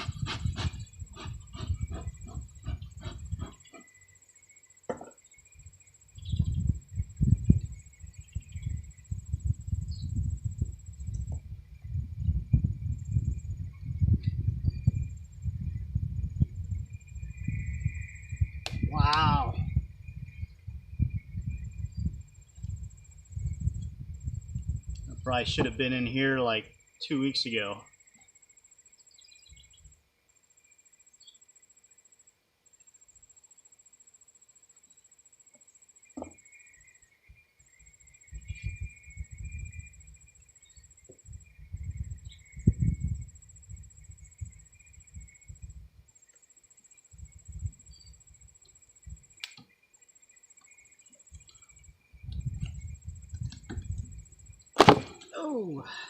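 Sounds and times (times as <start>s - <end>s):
microphone rumbling: 0.0s - 3.6s
insect trilling: 16.8s - 56.0s
sharp click: 49.4s - 49.7s.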